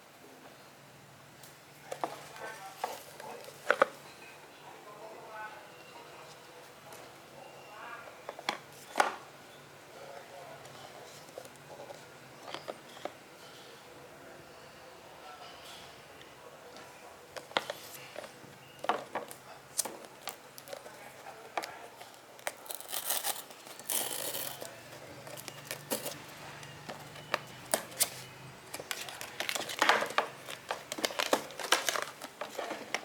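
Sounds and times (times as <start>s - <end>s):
packaging rustling: 17.4s - 33.0s
wrapping crinkling and tearing: 22.0s - 33.0s.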